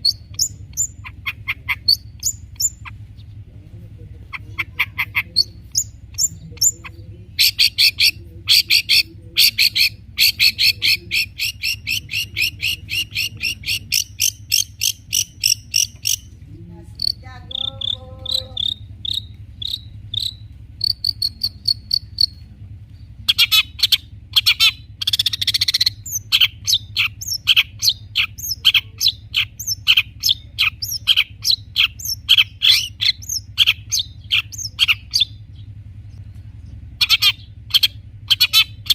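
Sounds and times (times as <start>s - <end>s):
bird harsh rasping call: 0.0s - 3.2s, 4.2s - 16.3s, 17.0s - 22.4s, 23.2s - 35.7s, 37.0s - 38.9s
bird singing high repeated notes: 17.0s - 22.4s.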